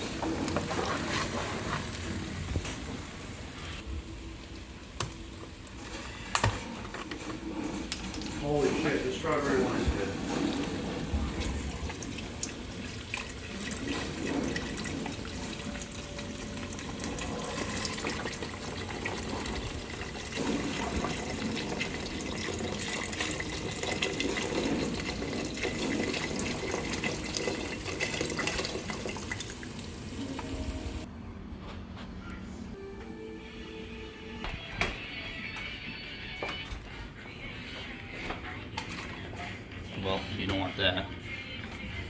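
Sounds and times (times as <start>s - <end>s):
kitchen tap running into sink: 8.0s - 31.0s.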